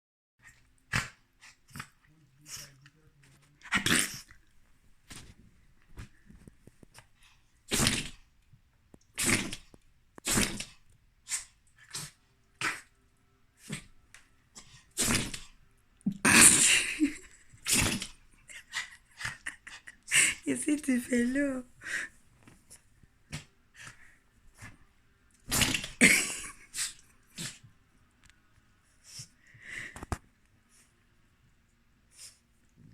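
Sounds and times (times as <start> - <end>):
small dog sneezing: 7.7 - 8.2, 9.2 - 12.9, 14.7 - 15.5, 17.6 - 18.2, 25.4 - 27.6
dog snorting breaths: 21.8 - 24.9.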